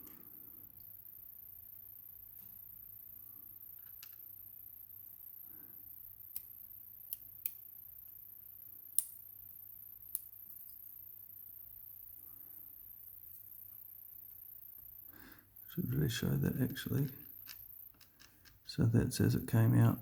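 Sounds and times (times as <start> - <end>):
small sharp metal clicks: 6.3 - 6.5, 8.9 - 9.2, 17.4 - 18.7.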